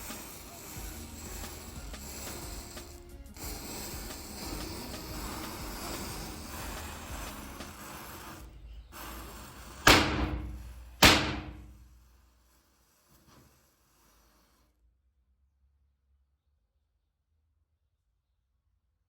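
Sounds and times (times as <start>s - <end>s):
firecrackers banging: 0.0s - 8.4s, 9.0s - 12.1s
steady hissing: 0.0s - 14.8s.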